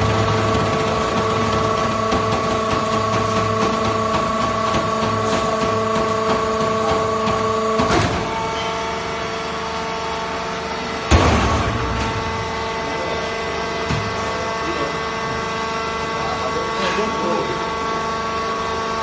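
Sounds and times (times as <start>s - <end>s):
machine clunk: 0.0s - 8.9s, 11.0s - 12.8s
baler machine humming: 0.0s - 19.0s.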